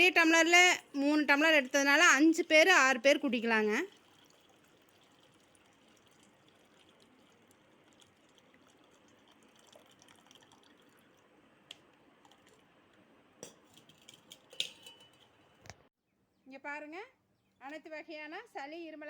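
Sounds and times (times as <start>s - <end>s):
liquid dripping through strainer: 1.6s - 15.3s.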